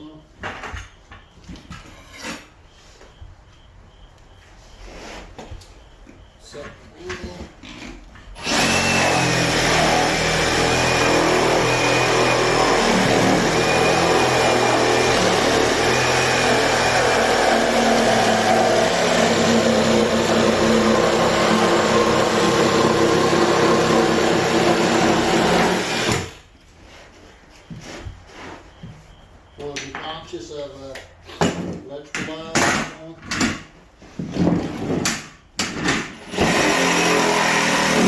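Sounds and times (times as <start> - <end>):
reciprocating saw cutting: 8.4 - 26.4, 36.3 - 38.0.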